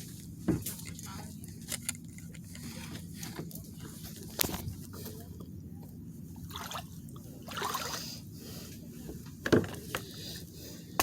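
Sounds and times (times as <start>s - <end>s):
paddle water swishing and dripping: 6.4s - 8.7s.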